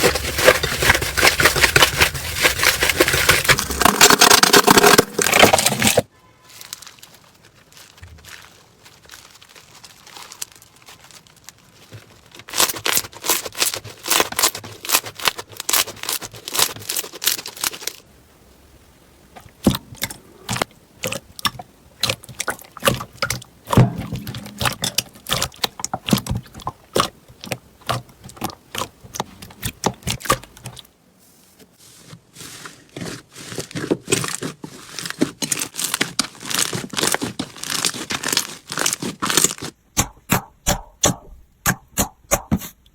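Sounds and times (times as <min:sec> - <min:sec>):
slime crackling and popping: 0:06.7 - 0:18.0, 0:34.1 - 0:42.5.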